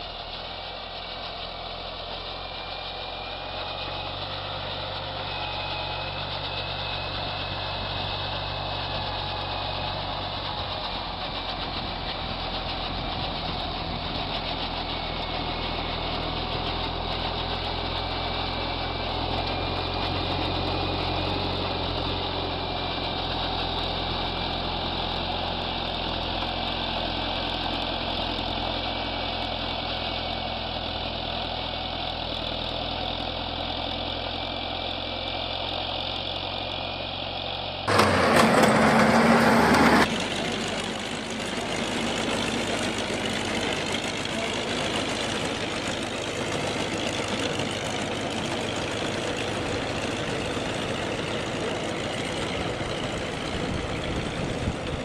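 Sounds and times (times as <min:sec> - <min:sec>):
different engine running: 0:00.0 - 0:55.0
vehicle engine running: 0:00.0 - 0:55.0
loud rushing noise: 0:37.9 - 0:40.1.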